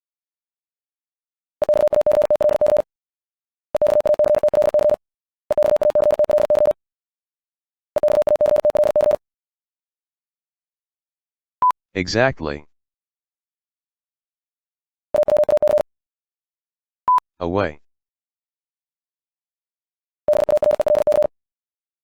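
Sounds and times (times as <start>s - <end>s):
morse code beeps: 1.6s - 2.9s, 3.8s - 6.8s, 8.0s - 9.2s, 15.2s - 15.8s, 20.3s - 21.3s.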